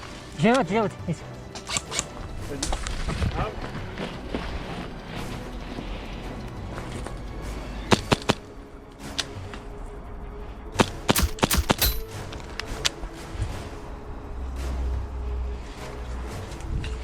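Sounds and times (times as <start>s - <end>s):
airsoft pistol shots: 11.2s - 12.2s.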